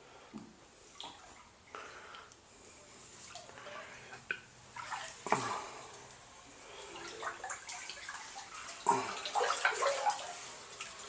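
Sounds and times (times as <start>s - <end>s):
floodwater splashing and sloshing: 3.2s - 11.0s.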